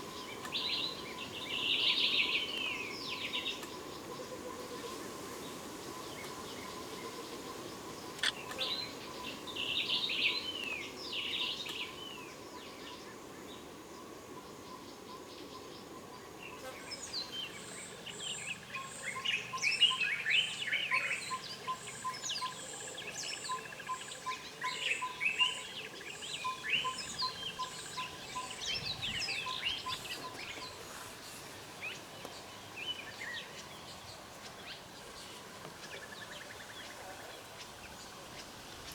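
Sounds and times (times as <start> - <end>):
birds chirping: 23.3 - 38.9.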